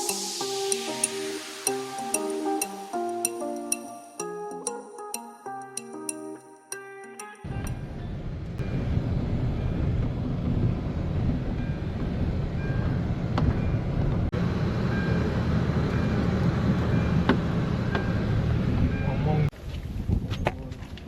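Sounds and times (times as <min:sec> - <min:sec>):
low rumbling noise: 0:07.5 - 0:19.5.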